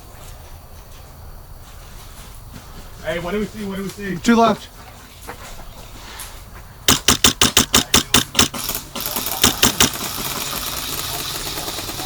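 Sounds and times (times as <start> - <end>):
airsoft gun firing bursts: 6.9 - 12.0.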